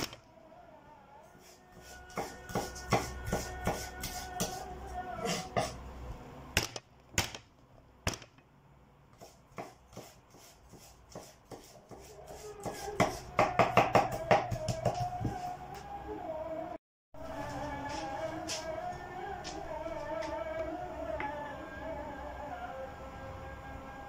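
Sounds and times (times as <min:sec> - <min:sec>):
knife chopping on cutting board: 0:02.1 - 0:04.6, 0:09.2 - 0:15.4.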